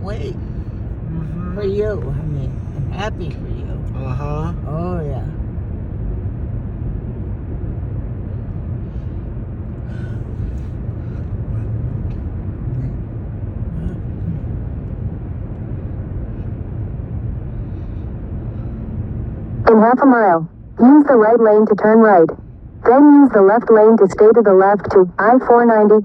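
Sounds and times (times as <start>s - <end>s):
car tyre and engine rumble: 0.0s - 19.7s.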